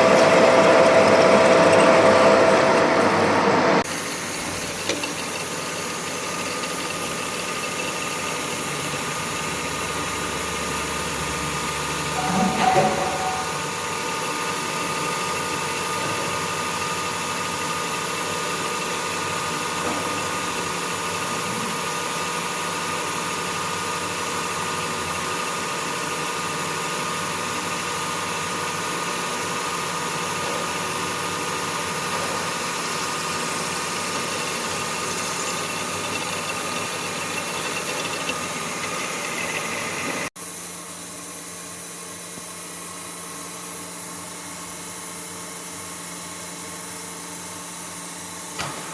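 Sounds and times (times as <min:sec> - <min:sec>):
machine tool motor humming: 0:00.0 - 0:19.7, 0:31.0 - 0:40.3.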